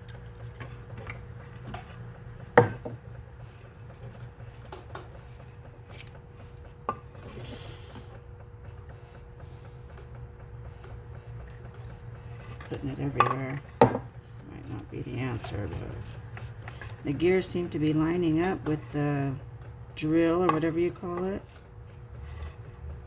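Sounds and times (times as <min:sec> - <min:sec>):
steady low hum: 0:00.0 - 0:23.0
knocks from handling mixer: 0:02.6 - 0:03.0, 0:13.2 - 0:14.1
aerosol spray hiss: 0:07.4 - 0:08.1.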